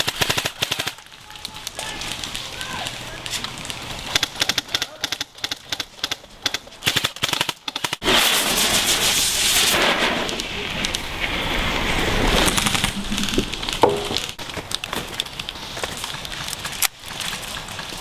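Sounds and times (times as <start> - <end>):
airsoft rifle firing: 0.0 - 1.1
loud steady hiss: 8.0 - 15.8.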